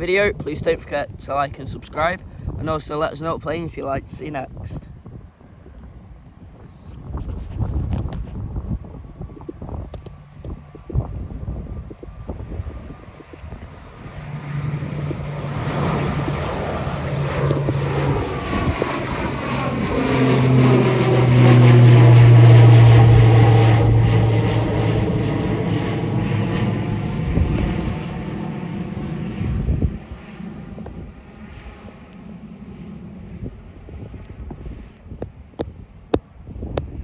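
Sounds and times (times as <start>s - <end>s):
turboprop airliner engines droning: 0.0s - 37.0s.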